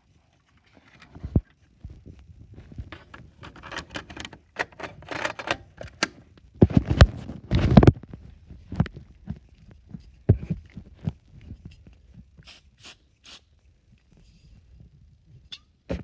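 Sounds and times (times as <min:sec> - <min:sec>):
plastic clicking and scraping: 0:00.4 - 0:01.6, 0:02.8 - 0:06.2.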